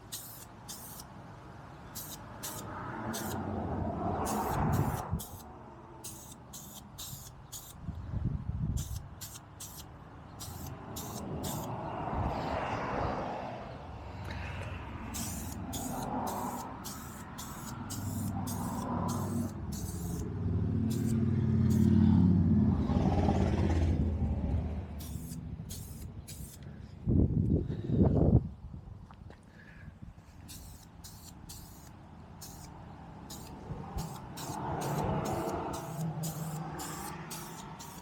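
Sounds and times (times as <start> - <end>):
paint spray hissing bursts: 0.0 - 1.2, 1.8 - 3.5, 4.2 - 7.8, 8.8 - 11.8, 15.1 - 20.3, 20.9 - 22.0, 25.0 - 26.6, 30.4 - 38.0
paint sprayer motor humming: 15.2 - 20.3, 20.9 - 22.0, 33.3 - 38.0.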